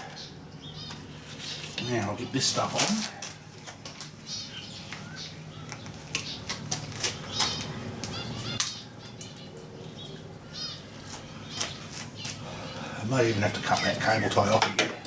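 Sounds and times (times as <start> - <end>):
bird chirps: 4.2 - 6.6, 7.2 - 14.4.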